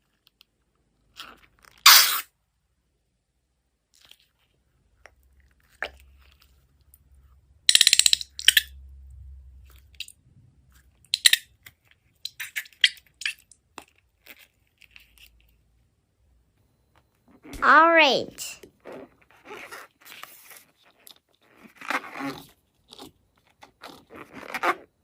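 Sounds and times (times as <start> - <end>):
slime squishing: 18.8 - 24.9.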